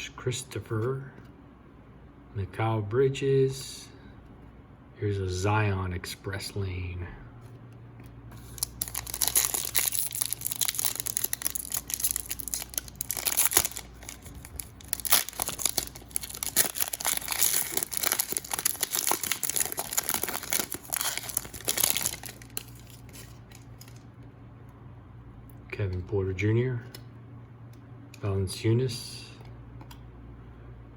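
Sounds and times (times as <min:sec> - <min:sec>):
plastic wrapper crinkling and tearing: 0:08.4 - 0:24.1.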